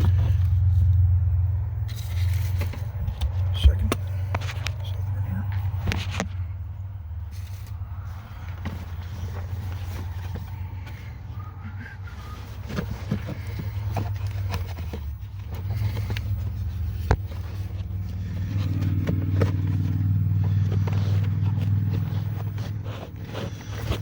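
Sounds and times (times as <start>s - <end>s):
vehicle engine humming: 0.0s - 24.0s
handling clicks and knocks: 12.4s - 24.0s.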